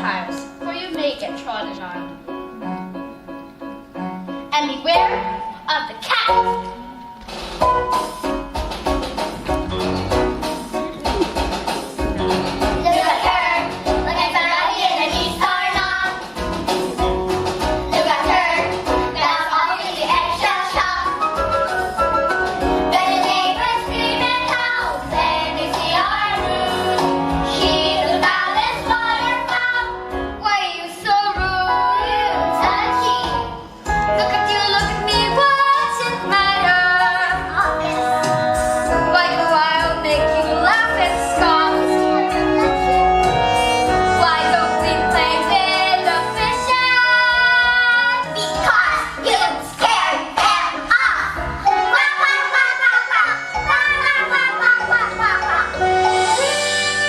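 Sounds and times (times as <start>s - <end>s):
instrumental accompaniment: 0.0s - 57.0s
young voices singing: 12.8s - 16.9s, 17.8s - 21.9s, 22.7s - 42.7s, 43.6s - 55.9s.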